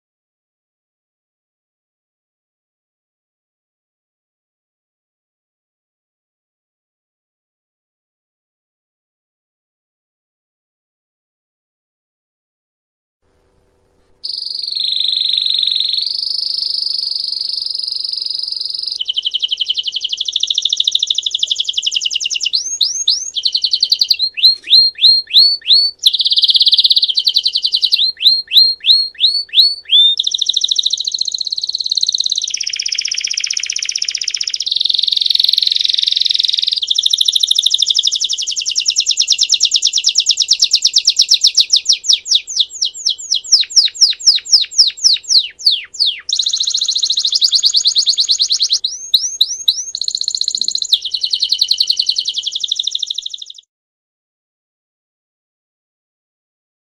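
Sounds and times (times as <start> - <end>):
canary singing fast trills: 14.2 - 53.7.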